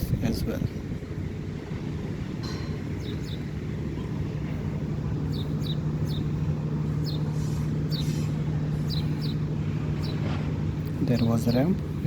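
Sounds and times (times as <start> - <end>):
low engine drone: 0.0 - 12.0
falling bird chirps: 2.7 - 3.6, 7.0 - 10.4.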